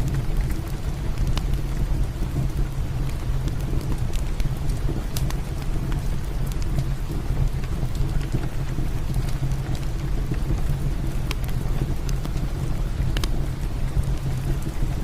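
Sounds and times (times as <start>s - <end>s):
heavy rain: 0.0s - 15.0s
wood fire crackling and popping: 0.0s - 15.0s.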